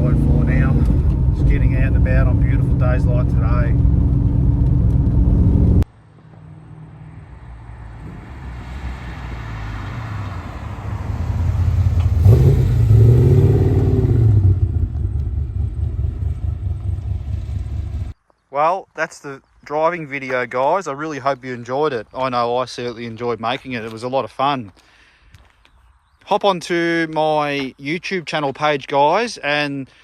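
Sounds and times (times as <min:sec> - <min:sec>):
car engine droning: 0:00.0 - 0:18.2.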